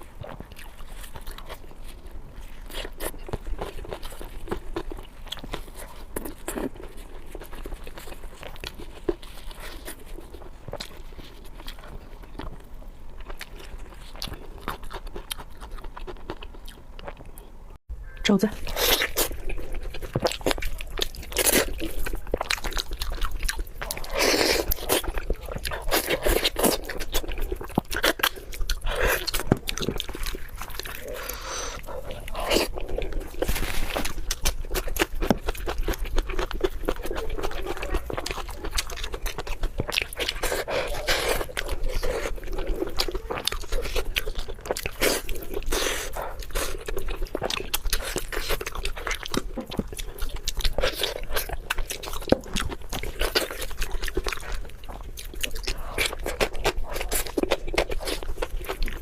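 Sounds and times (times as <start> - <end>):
person chewing crunchy food: 0.0 - 17.5, 18.5 - 59.0.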